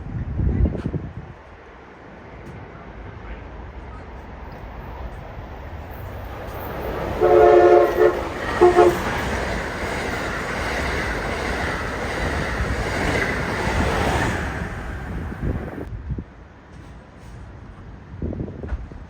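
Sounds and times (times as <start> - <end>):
train passing with wheel clatter: 0.6 - 19.0
train horn chord: 6.9 - 9.4.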